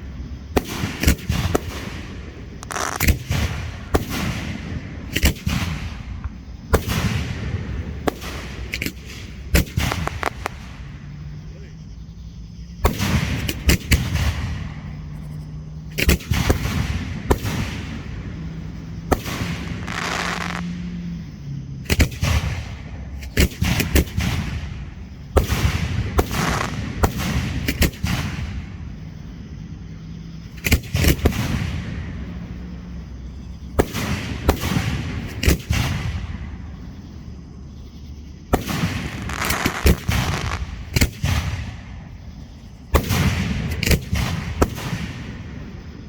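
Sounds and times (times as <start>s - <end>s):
fireworks hiss: 0.0s - 11.8s, 15.9s - 21.0s, 21.9s - 28.8s, 38.5s - 45.6s
fireworks bangs: 0.0s - 29.7s, 30.5s - 37.1s, 38.5s - 46.0s.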